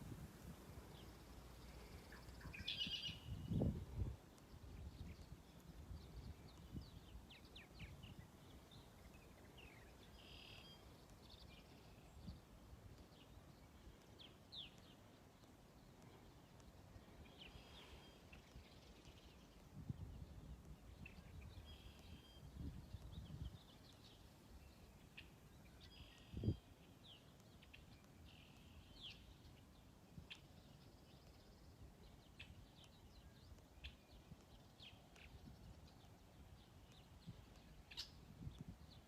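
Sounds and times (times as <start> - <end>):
bird chirps: 0.9 - 3.7, 5.0 - 12.2, 21.0 - 29.7.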